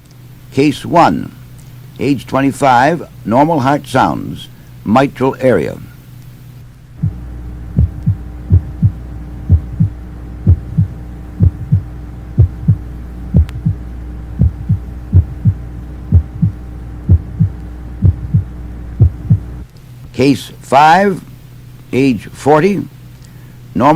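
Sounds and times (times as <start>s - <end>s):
low steady hum: 0.0s - 23.9s
heartbeat lub-dub thumps: 7.0s - 19.6s.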